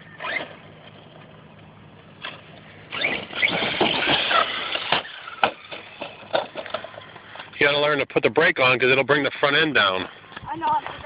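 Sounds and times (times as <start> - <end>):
electric motor whining and revving: 0.1 - 0.7, 2.9 - 5.6.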